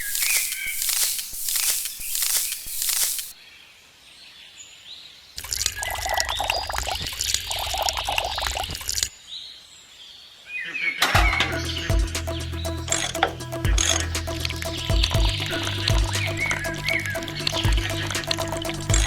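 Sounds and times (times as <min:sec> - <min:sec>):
pouring rushing noise: 0:00.0 - 0:03.4
small birds chirping: 0:00.0 - 0:03.6
music with steady beat: 0:11.2 - 0:19.0.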